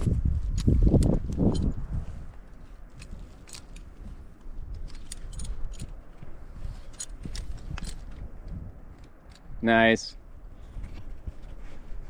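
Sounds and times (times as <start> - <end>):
climbing hardware clinking: 2.6 - 9.6.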